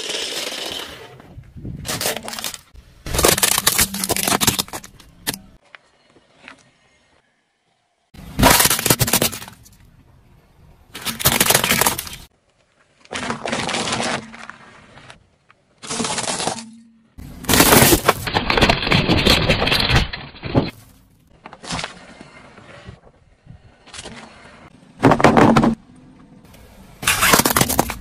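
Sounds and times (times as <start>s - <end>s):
tyre crushing brittle objects: 1.8s - 5.6s, 8.2s - 9.8s, 10.9s - 12.3s, 13.0s - 15.2s, 15.8s - 22.0s, 27.0s - 28.0s.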